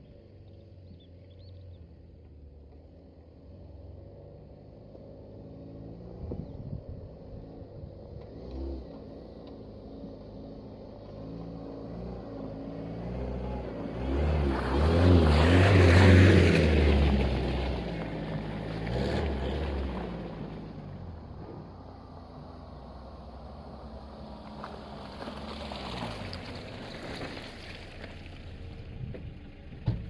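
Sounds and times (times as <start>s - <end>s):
off-road vehicle engine revving: 7.6s - 21.9s.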